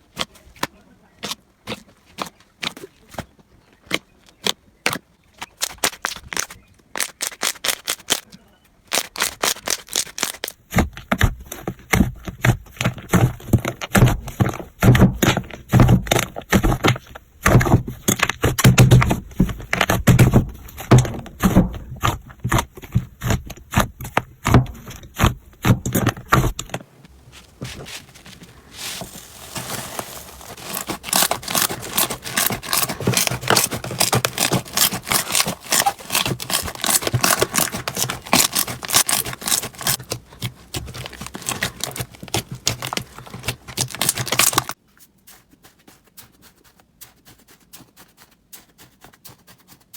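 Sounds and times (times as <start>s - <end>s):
slime crackling finely: 27.1s - 44.8s.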